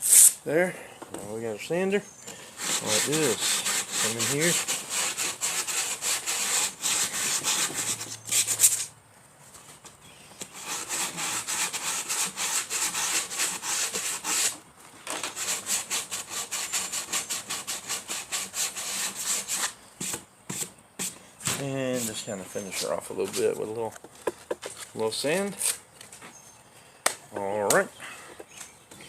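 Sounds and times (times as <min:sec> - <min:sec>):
sanding rasping strokes: 0:02.5 - 0:08.9, 0:10.5 - 0:14.6, 0:15.2 - 0:21.2.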